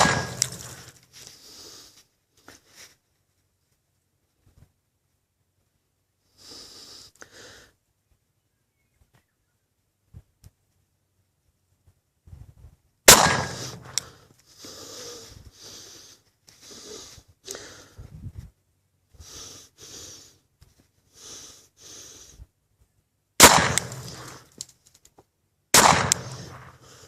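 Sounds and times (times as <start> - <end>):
pistol shots with echo: 0.0 - 0.9, 13.1 - 14.0, 23.4 - 24.4, 25.7 - 26.8
short puffs of breath: 6.3 - 7.8, 13.5 - 18.5, 19.1 - 22.6.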